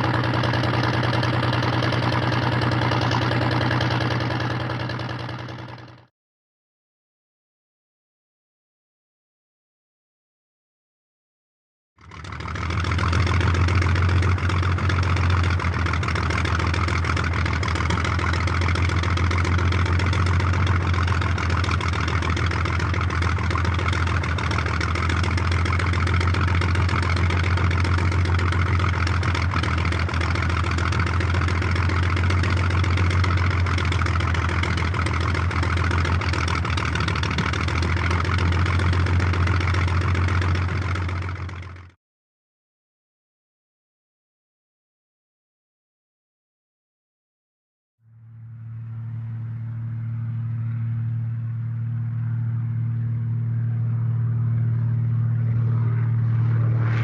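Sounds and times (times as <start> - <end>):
biplane piston engine idling: 0.0 - 6.1, 12.0 - 41.9, 48.1 - 57.0.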